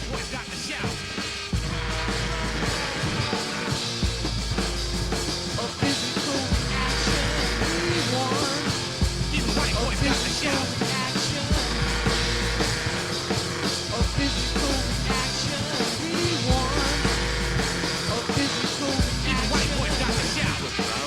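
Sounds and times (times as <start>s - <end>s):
instrumental rock music: 0.0s - 21.0s.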